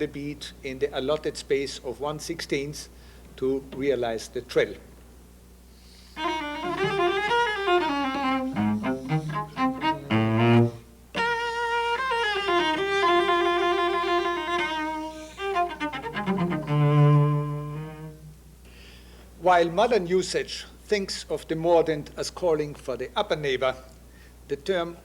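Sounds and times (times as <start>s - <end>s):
solo cello melody: 6.2s - 18.4s.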